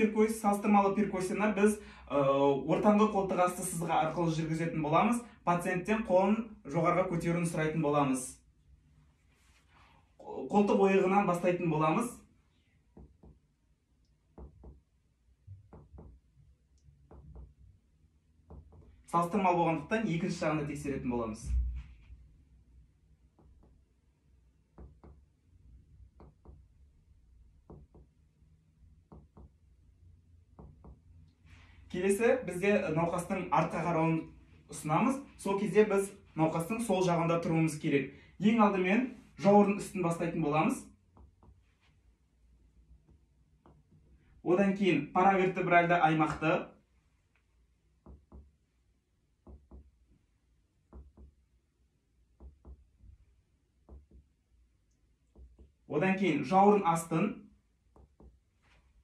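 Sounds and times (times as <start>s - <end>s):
finger tapping on back: 24.6s - 25.4s, 29.0s - 29.7s, 49.4s - 50.0s, 50.8s - 51.5s, 52.3s - 54.4s.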